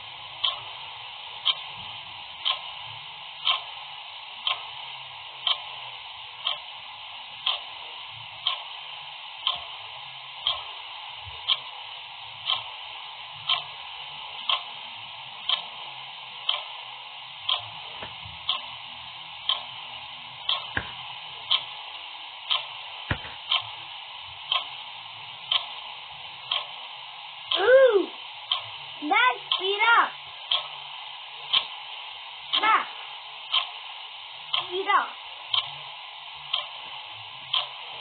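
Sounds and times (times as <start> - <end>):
clock ticking: 0.4 - 0.8, 1.4 - 1.7, 2.4 - 2.8, 3.4 - 3.8, 4.4 - 4.7, 5.4 - 5.8, 6.4 - 6.7, 7.4 - 7.8, 8.4 - 8.8, 9.4 - 9.8, 10.4 - 10.8, 11.4 - 11.8, 12.4 - 12.8, 13.4 - 14.8, 15.5 - 15.8, 16.4 - 16.8, 17.5 - 18.8, 19.4 - 19.8, 20.4 - 23.8, 24.4 - 24.8, 25.5 - 25.9, 26.5 - 26.9, 27.5 - 30.9, 31.5 - 31.8, 32.5 - 33.8, 34.5 - 35.7, 36.5 - 38.0.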